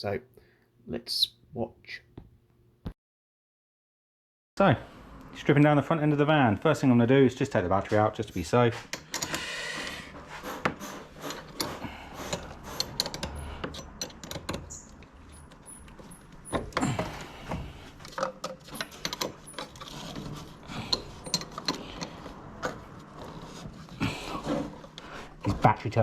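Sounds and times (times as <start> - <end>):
hand tools clicking on metal: 10.6 - 16.4, 18.0 - 22.8.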